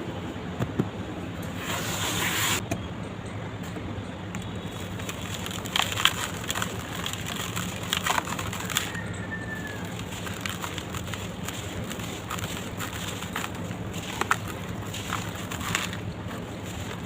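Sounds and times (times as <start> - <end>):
dry dirt crumbling and crunching: 4.3 - 17.0.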